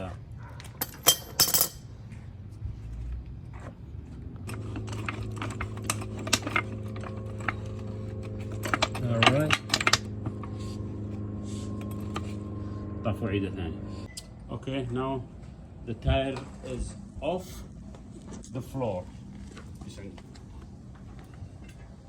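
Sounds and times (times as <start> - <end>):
jack metallic clicks and clanks: 4.4 - 10.5
steady hum: 4.7 - 21.8.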